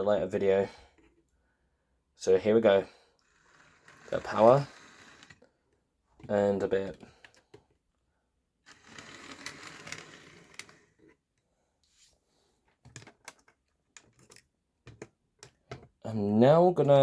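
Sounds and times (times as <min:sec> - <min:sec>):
clicks and knocks of handling: 0:12.7 - 0:16.0.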